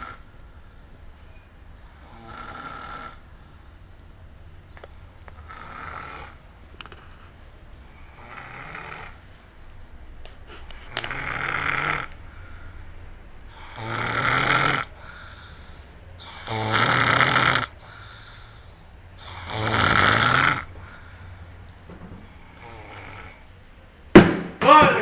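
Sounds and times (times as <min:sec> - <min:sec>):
quiet breathing: 0:00.0 - 0:04.2, 0:04.8 - 0:09.5, 0:10.4 - 0:17.0, 0:17.6 - 0:23.7
man snoring: 0:02.0 - 0:03.2, 0:05.5 - 0:06.4, 0:08.0 - 0:09.2, 0:11.2 - 0:12.1, 0:13.5 - 0:14.9, 0:16.2 - 0:17.8, 0:19.2 - 0:20.7.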